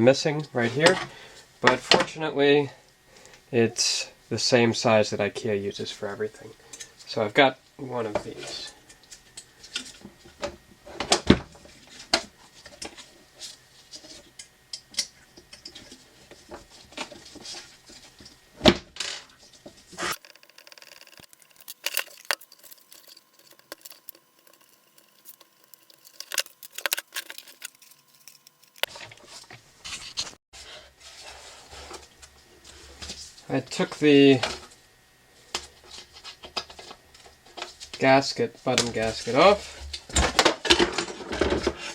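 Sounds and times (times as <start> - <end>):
metal parts clicking and clinking: 20.2 - 28.9.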